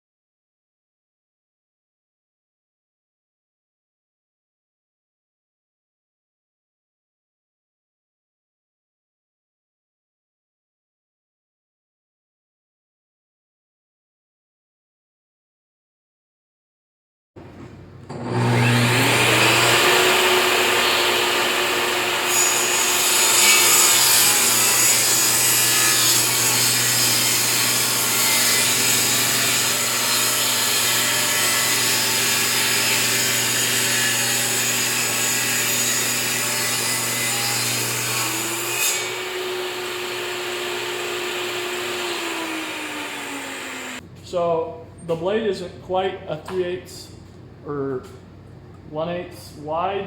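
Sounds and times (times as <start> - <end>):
table saw cutting wood: 18.1 - 44.0.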